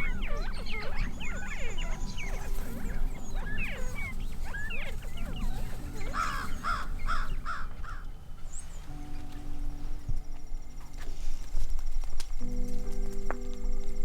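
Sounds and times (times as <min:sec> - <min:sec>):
crow cawing: 0:00.0 - 0:08.2
bird chirps: 0:00.0 - 0:14.0.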